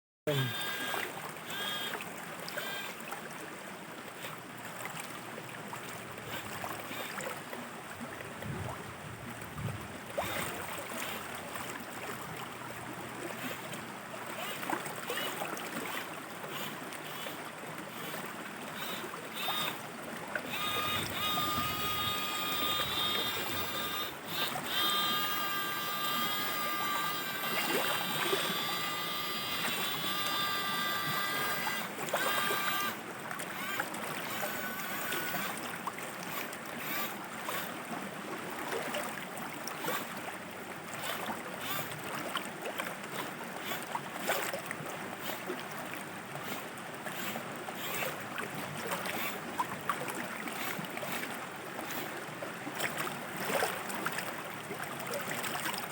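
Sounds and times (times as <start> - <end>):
shallow river water trickling: 0.3 - 55.9
small splashes and knocks: 47.2 - 55.9.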